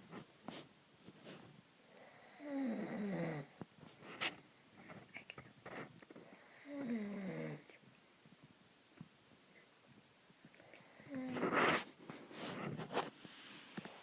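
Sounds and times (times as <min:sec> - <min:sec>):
man snoring: 0:02.0 - 0:03.5, 0:06.4 - 0:07.7.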